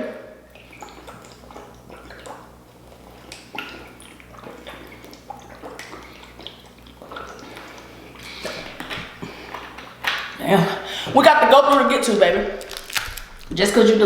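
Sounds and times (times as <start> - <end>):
wet chewing: 0.5 - 10.4, 12.5 - 13.6
small clicks and squishes: 12.6 - 13.6.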